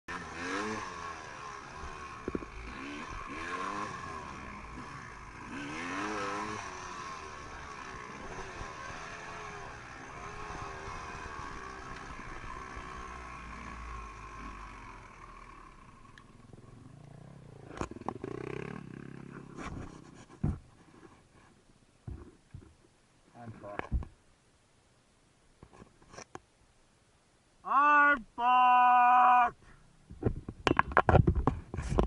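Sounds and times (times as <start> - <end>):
off-road vehicle engine revving: 0.1 - 19.6.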